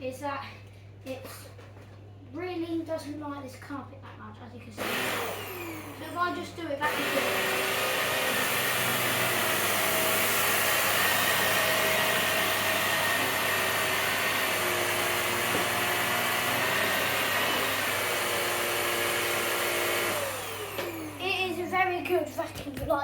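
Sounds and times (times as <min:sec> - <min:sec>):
vacuum cleaner running on carpet: 0:04.8 - 0:06.2, 0:06.8 - 0:21.2
motor winding down whine: 0:06.9 - 0:21.2.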